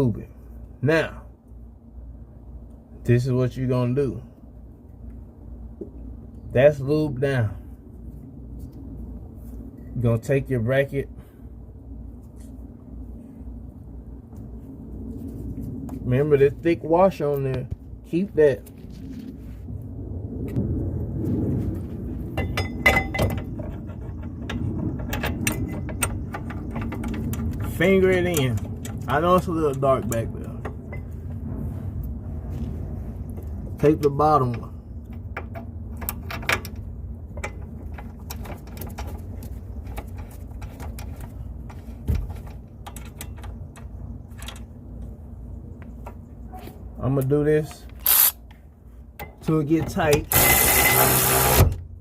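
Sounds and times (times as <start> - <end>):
steady low hum: 0.0 - 52.0
steady low rumble: 0.0 - 52.0.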